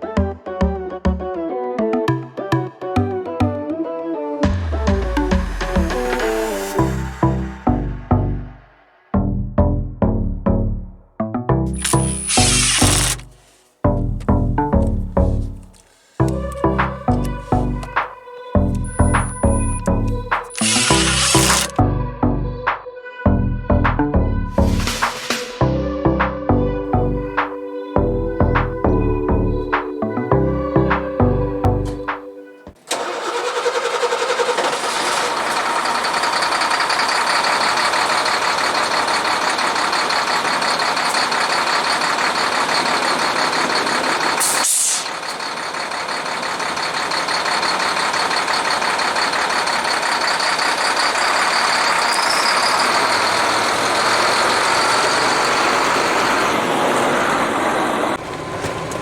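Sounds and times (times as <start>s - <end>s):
diesel truck engine running: 11.7s - 22.1s, 32.9s - 59.0s.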